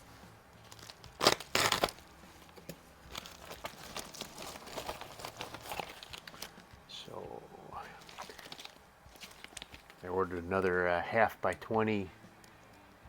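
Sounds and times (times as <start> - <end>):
packaging crinkling and rustling: 0.6 - 6.7, 7.9 - 10.1
package tearing open: 0.7 - 2.0, 3.1 - 6.6, 8.0 - 10.0.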